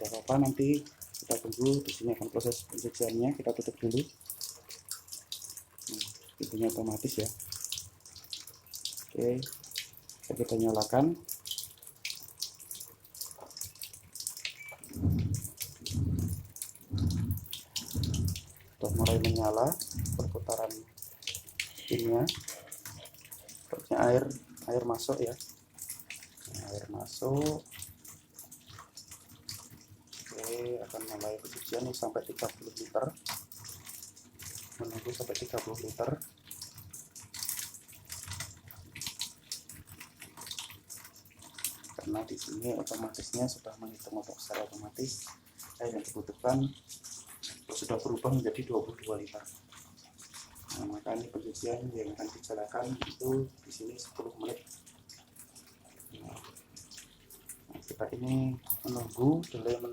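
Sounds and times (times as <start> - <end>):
water splashing and dripping: 0.0 - 59.9
water splashing into drum: 14.4 - 22.7
washing machine motor humming: 14.5 - 20.6.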